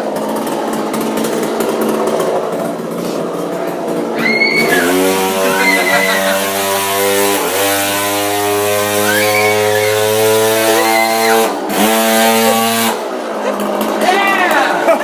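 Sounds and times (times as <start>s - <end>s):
chainsaw engine running: 0.0s - 14.2s
high wavering sounds: 4.1s - 7.6s, 8.3s - 11.7s.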